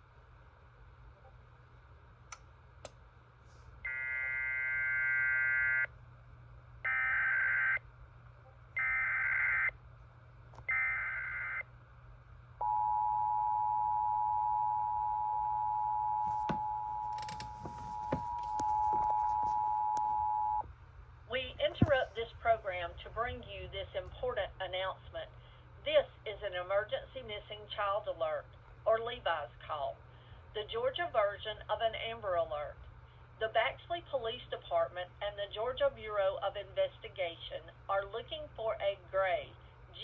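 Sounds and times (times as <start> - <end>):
clicks: 16.4 - 19.1.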